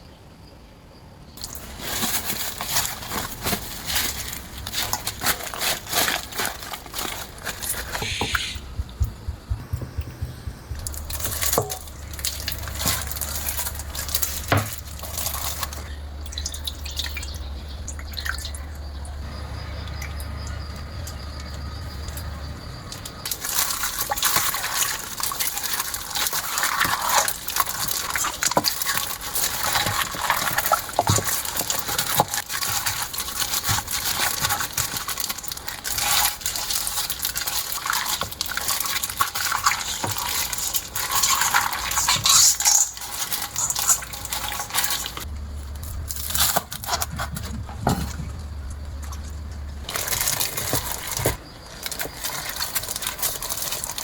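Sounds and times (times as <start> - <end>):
low steady hum: 7.0 - 23.3, 45.2 - 51.2
handling knocks: 7.7 - 15.8
water running and splashing: 23.2 - 45.3.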